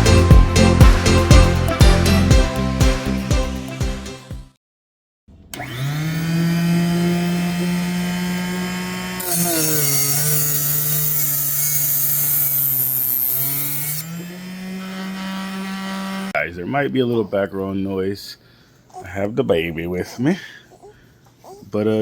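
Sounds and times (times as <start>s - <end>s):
small electric motors whirring: 5.6s - 16.3s.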